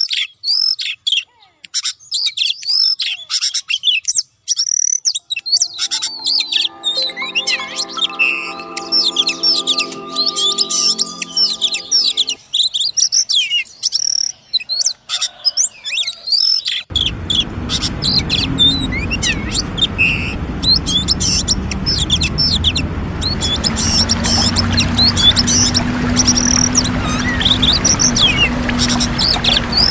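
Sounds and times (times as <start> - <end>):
steady low tone: 5.5 - 12.4, 16.9 - 29.9
background hum and noise: 16.9 - 29.9.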